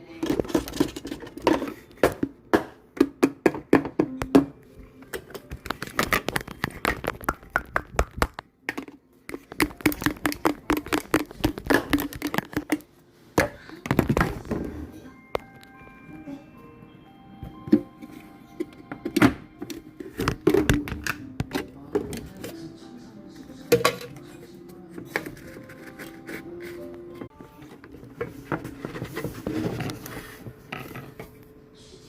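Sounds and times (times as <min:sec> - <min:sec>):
objects tapping on hard surface: 0:00.2 - 0:14.4.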